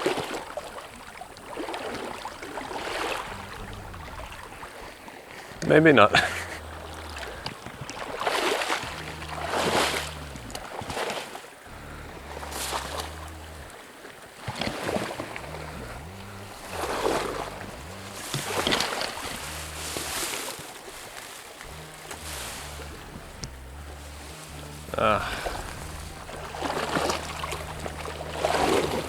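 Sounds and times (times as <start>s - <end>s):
music with low bass line: 3.2s - 4.6s, 5.6s - 7.5s, 8.8s - 10.8s, 11.7s - 13.8s, 15.3s - 20.5s, 21.6s - 29.0s.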